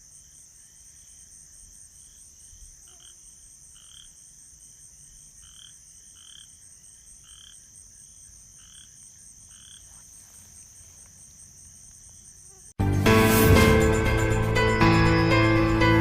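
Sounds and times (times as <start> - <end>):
crickets chirping: 0.0 - 12.8
frogs croaking: 0.0 - 12.8.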